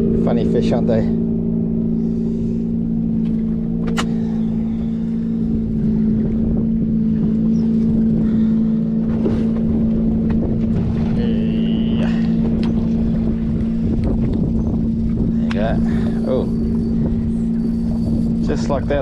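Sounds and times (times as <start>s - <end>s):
motorboat engine running: 0.0s - 19.0s
wind rumbling on microphone: 1.6s - 19.0s
sharp click: 3.8s - 4.2s.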